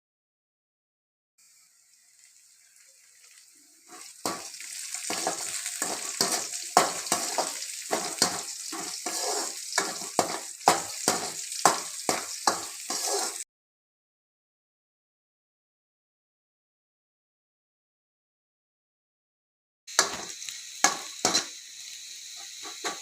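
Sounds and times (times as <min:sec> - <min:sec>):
food frying in hot oil: 0:01.4 - 0:13.4, 0:19.9 - 0:23.0
spatula stirring and scraping pan: 0:03.8 - 0:13.4, 0:19.9 - 0:21.6, 0:22.3 - 0:23.0.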